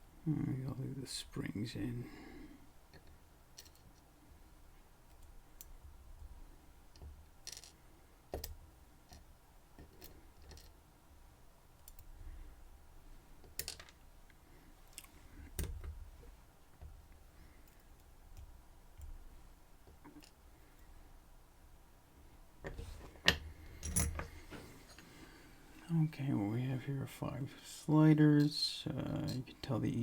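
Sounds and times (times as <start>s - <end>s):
small metal parts clicking: 2.9s - 4.0s, 6.9s - 9.2s, 9.8s - 10.7s.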